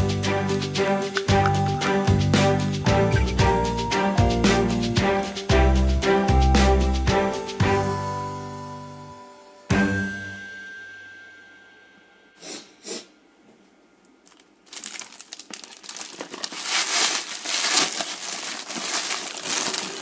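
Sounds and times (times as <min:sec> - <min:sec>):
held tone: 0:08.0 - 0:12.4
foil wrapper crinkling and tearing: 0:14.3 - 0:20.0.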